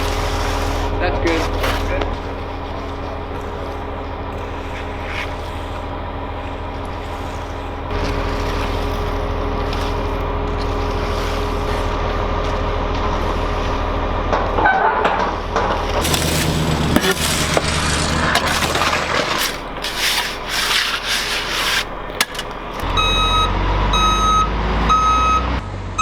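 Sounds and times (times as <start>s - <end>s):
heavy engine running: 0.0s - 26.0s.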